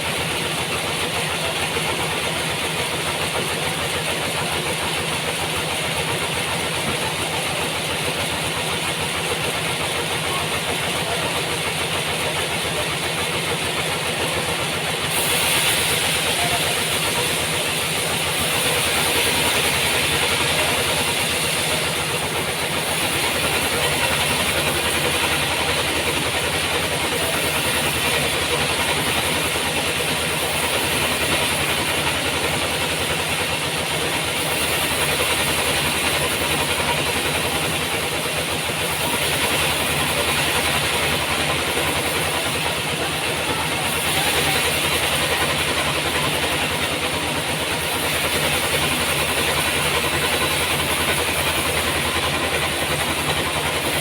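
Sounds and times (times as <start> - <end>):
sawmill engine running: 0.0 - 54.0
saw blade hissing through log: 15.0 - 33.5.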